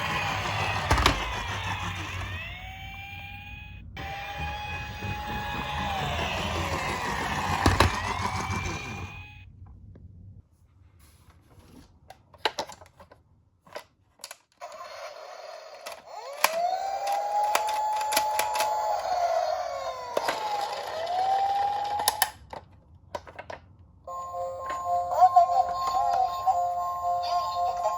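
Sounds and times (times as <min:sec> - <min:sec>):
toy siren: 0:00.0 - 0:09.5, 0:14.6 - 0:22.4, 0:24.1 - 0:27.9.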